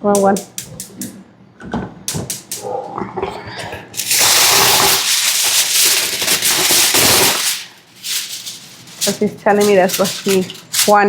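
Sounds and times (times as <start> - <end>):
aluminium foil crinkling: 4.0 - 11.0.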